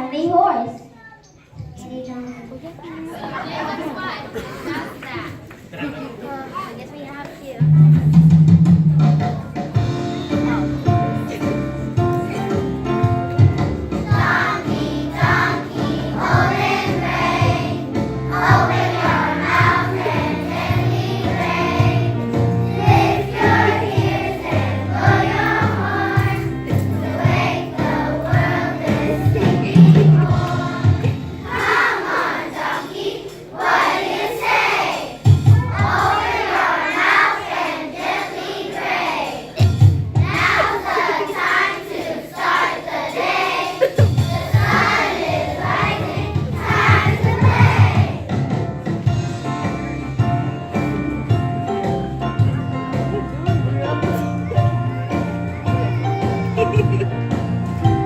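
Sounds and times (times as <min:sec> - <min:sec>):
instrumental backing: 0:07.6 - 0:58.0
group of voices singing: 0:14.0 - 0:35.2, 0:35.8 - 0:39.6, 0:40.3 - 0:48.2.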